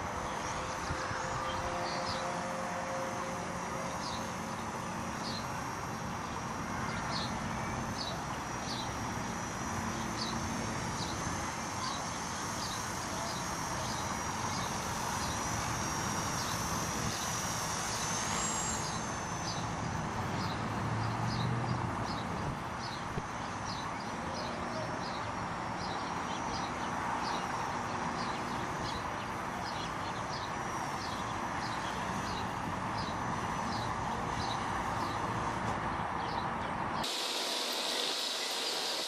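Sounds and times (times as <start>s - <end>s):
rc helicopter motor whine: 0.0s - 39.0s.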